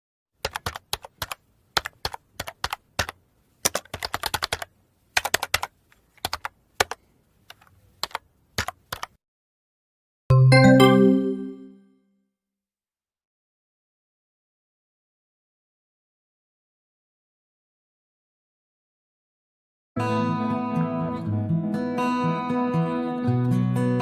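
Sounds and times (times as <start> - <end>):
computer keyboard typing: 0.4 - 9.2.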